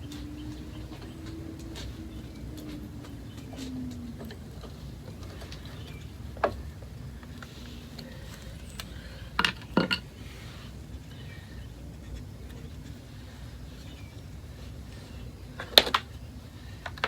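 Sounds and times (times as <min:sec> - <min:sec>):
hand tools clicking and knocking: 0:00.0 - 0:10.1
steady low background noise: 0:00.0 - 0:17.0.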